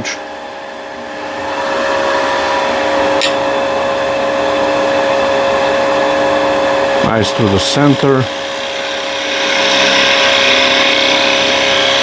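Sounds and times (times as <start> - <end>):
lathe whine: 0.0 - 12.0
gouge hissing on spinning wood: 7.1 - 12.0.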